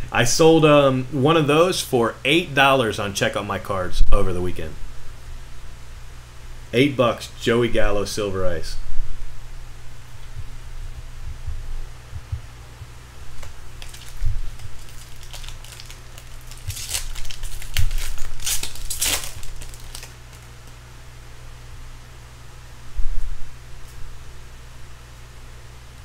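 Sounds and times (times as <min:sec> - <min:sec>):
plastic wrapping crinkling: 0:13.3 - 0:20.8.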